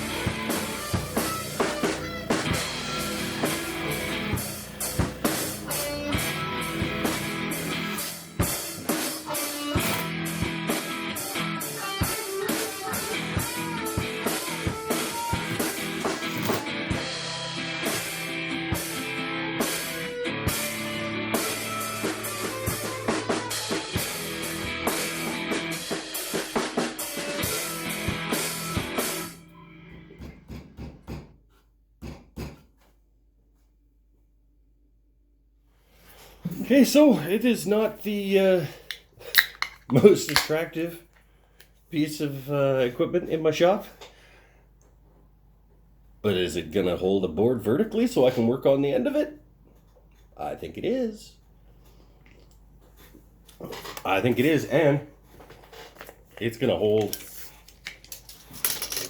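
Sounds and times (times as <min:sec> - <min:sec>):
background music with drums and guitar: 0:00.0 - 0:30.8.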